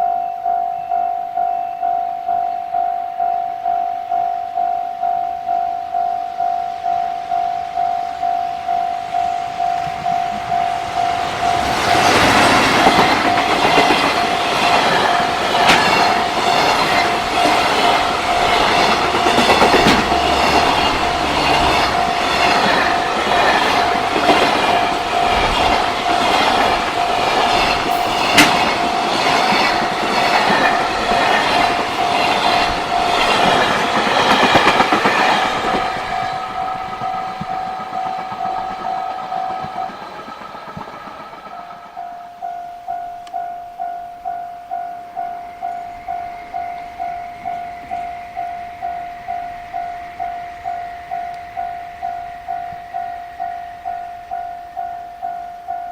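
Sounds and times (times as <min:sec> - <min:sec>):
train wheels clacking over rail joints: 0:09.4 - 0:42.6.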